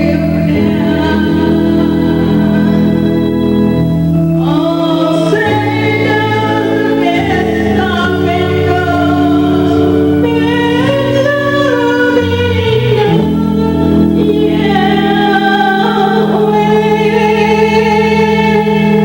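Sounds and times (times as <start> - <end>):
choir singing held notes: 0.0 - 19.0
instrumental accompaniment: 0.0 - 19.0.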